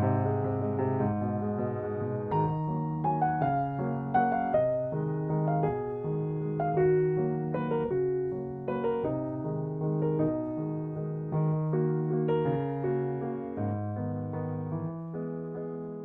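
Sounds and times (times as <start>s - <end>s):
piano chords over low bass: 0.0s - 16.0s.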